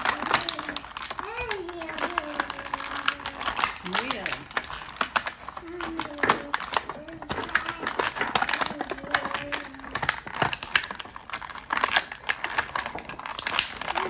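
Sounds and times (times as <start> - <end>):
faint voice: 0.0 - 4.4, 5.6 - 10.1
plastic toys clicking and tapping: 0.0 - 14.0.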